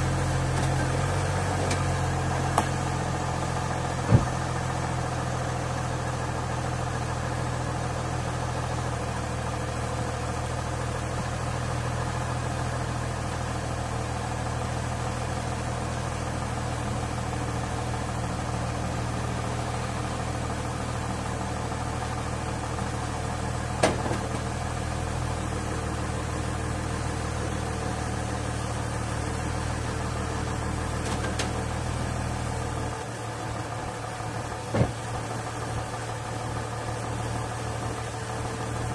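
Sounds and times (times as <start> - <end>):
low mechanical hum: 16.8 - 36.3.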